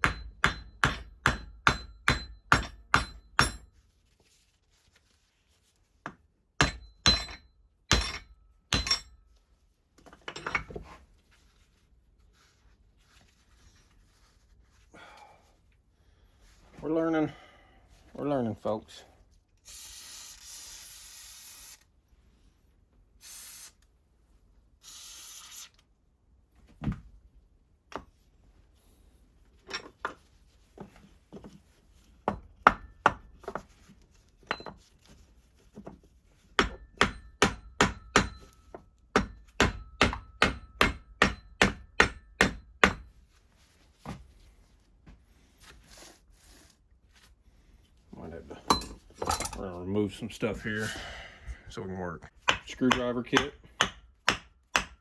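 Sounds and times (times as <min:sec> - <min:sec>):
hammer tapping on metal: 0:00.0 - 0:03.6, 0:06.6 - 0:09.1, 0:52.5 - 0:55.0.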